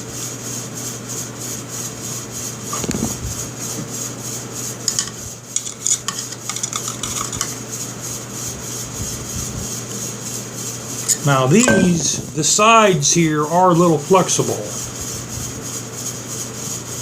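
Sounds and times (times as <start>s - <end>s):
steady hum: 2.4s - 15.9s.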